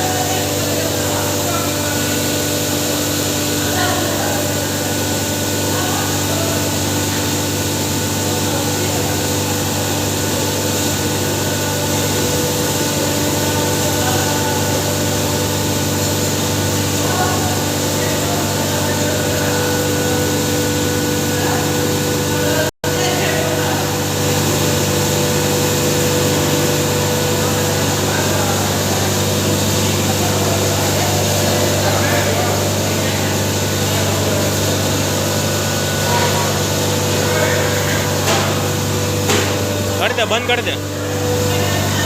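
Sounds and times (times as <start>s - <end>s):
steady motor hum: 0.0s - 42.0s.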